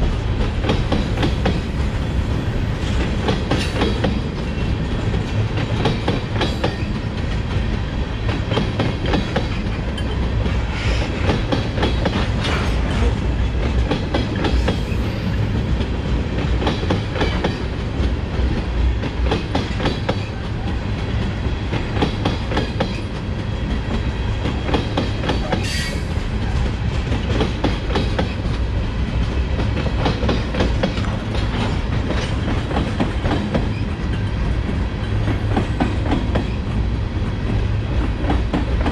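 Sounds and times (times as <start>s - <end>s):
train wheels clacking over rail joints: 0.0s - 1.9s, 2.8s - 38.9s
low rumble of train: 0.0s - 38.9s.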